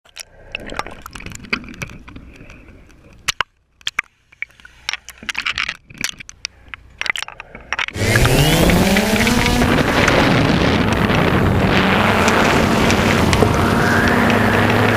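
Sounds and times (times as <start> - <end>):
clicks and knocks of handling: 0.1 - 9.5
motorboat engine speeding up: 8.0 - 14.9.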